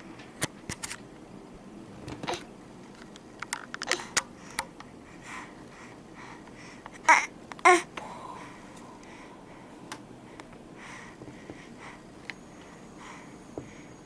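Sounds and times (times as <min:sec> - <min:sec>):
baby babbling: 0:07.0 - 0:07.9.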